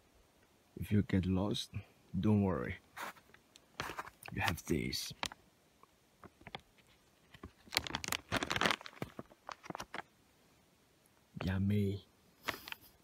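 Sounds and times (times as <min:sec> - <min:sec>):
plastic wrapper crinkling: 0:06.2 - 0:10.1.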